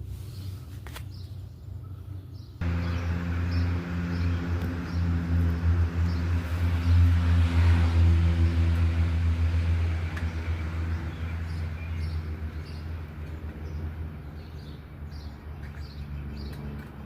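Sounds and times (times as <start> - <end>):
birds chirping: 0.4 - 17.0
motor humming: 2.6 - 7.7
low rumble: 2.6 - 14.3.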